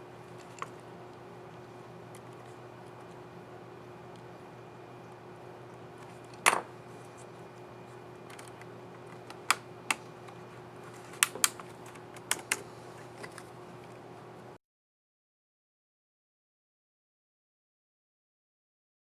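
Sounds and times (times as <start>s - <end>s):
laptop keyboard key clicks: 11.1s - 12.6s.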